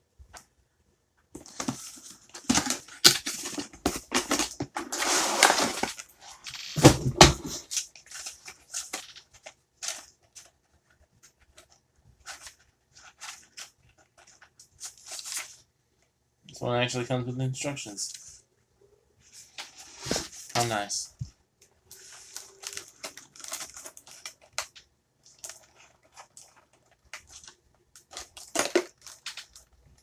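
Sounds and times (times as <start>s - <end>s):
cardboard and plastic rustling: 1.4s - 15.7s, 19.3s - 21.3s, 21.9s - 30.0s.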